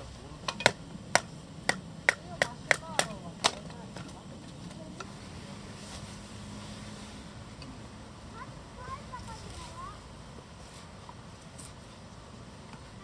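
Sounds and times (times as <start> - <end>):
sharp knocks with faint ringing: 0.5 - 4.2.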